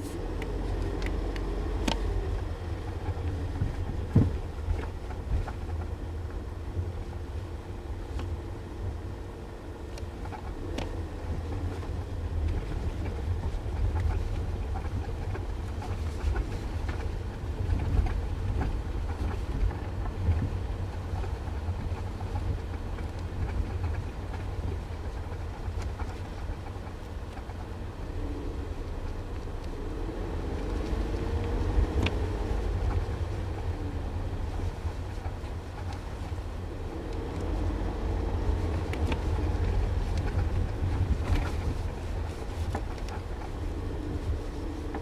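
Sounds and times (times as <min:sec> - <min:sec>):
car road rumble: 0:00.0 - 0:45.0
knocks and clanks from car: 0:02.9 - 0:06.0.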